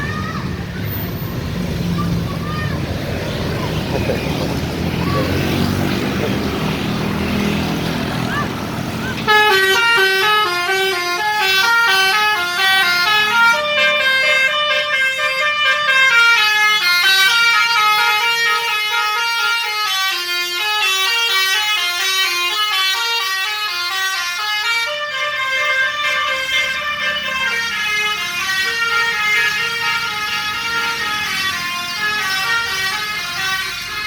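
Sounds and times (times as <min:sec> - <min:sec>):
multi-tone musical air horn: 0:09.2 - 0:34.0.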